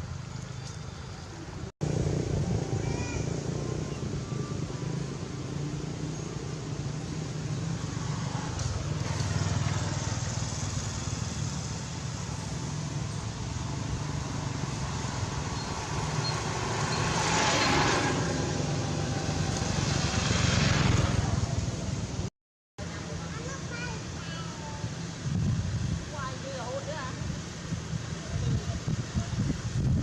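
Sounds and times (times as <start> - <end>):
traffic engine hum and road noise: 0.0 - 30.0
vehicle passing: 1.8 - 22.2.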